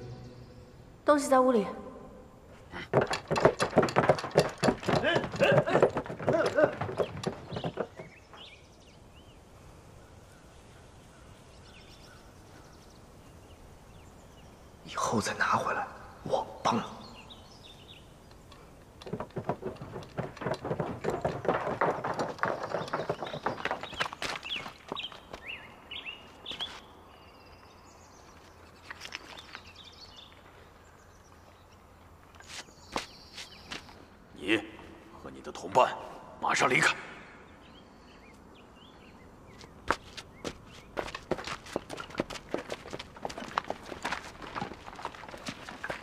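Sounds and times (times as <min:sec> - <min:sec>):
low steady hiss: 0:00.0 - 0:02.8, 0:08.2 - 0:19.0, 0:25.2 - 0:39.8
birds chirping: 0:00.0 - 0:46.0.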